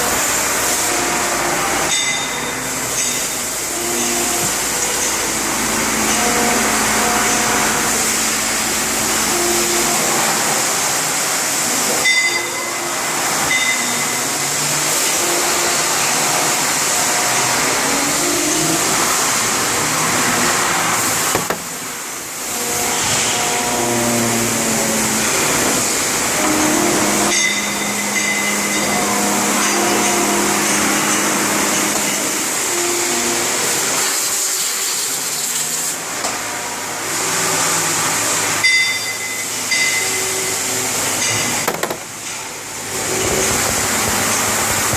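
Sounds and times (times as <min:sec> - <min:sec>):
machine tones shifting pitch: 0:00.0 - 0:35.6
cnc machine whirring: 0:00.0 - 0:44.9.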